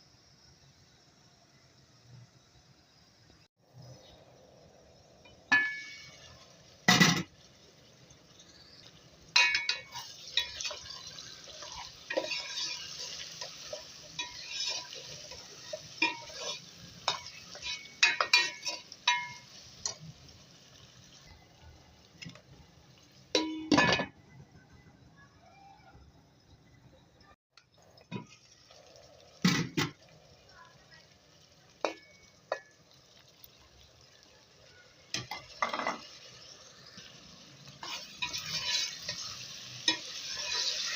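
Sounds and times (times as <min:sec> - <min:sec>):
metal utensil clinking on cookware: 0:05.5 - 0:07.3, 0:09.3 - 0:20.0, 0:31.8 - 0:32.9, 0:35.1 - 0:37.1, 0:37.7 - 0:40.9.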